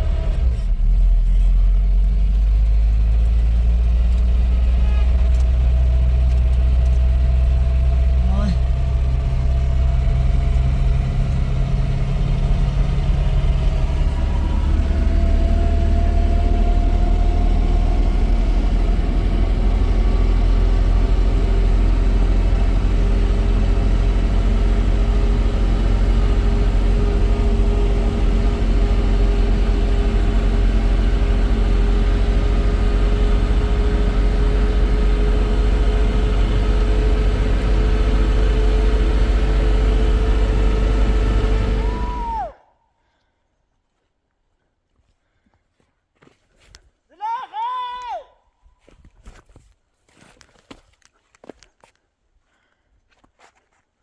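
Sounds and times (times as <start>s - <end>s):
vehicle engine running: 0.0s - 42.5s.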